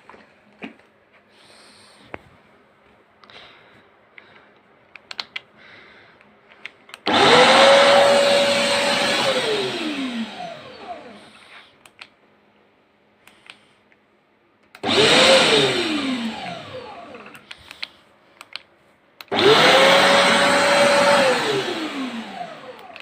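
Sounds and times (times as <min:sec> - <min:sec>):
vacuum motor whine: 0:07.1 - 0:11.3, 0:14.8 - 0:17.4, 0:19.3 - 0:23.0.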